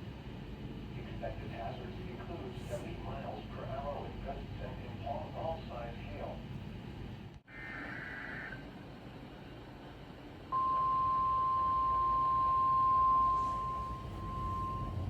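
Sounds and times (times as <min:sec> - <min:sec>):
steady single-pitch alarm tone: 0:10.5 - 0:15.0.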